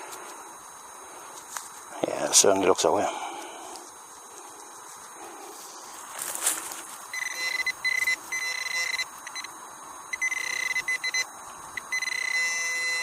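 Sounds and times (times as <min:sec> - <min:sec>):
rustling: 0:03.3 - 0:09.5
metal detector beeping: 0:07.1 - 0:09.5, 0:10.1 - 0:13.0.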